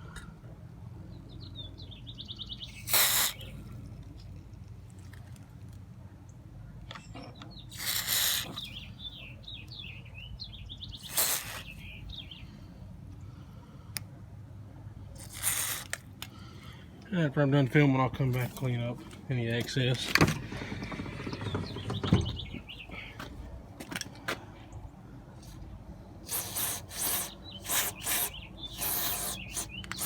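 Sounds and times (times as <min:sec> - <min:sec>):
birds chirping: 0:01.1 - 0:04.8, 0:06.3 - 0:13.4, 0:16.3 - 0:23.6, 0:24.5 - 0:30.0
aerosol can spraying: 0:02.8 - 0:03.4, 0:07.8 - 0:08.6, 0:11.0 - 0:11.7, 0:26.3 - 0:30.0.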